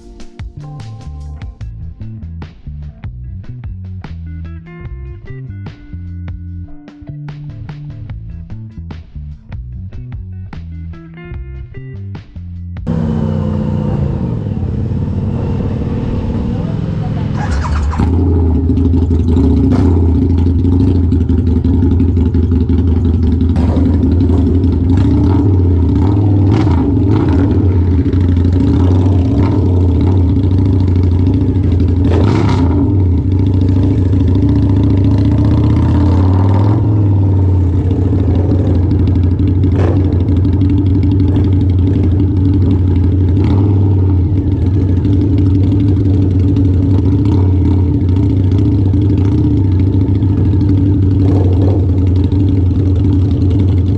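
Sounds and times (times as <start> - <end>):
motorcycle engine idling: 12.8 - 15.4, 16.2 - 53.9.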